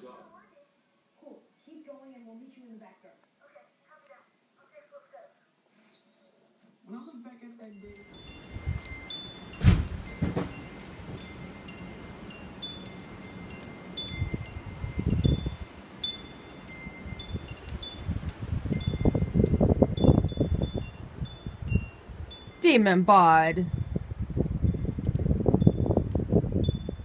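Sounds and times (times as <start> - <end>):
wind chimes tinkling: 7.6 - 24.0, 24.6 - 27.0.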